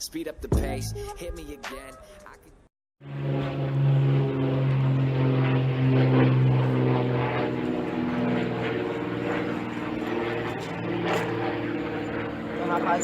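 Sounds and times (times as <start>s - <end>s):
engine running: 3.0s - 13.0s.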